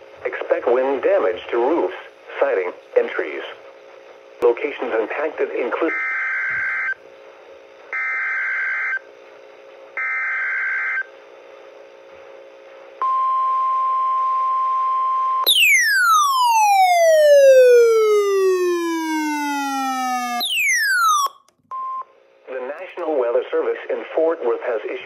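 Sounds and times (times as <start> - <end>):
steady warning tone: 15.4 - 21.5
siren-like wail falling in pitch: 15.5 - 21.4.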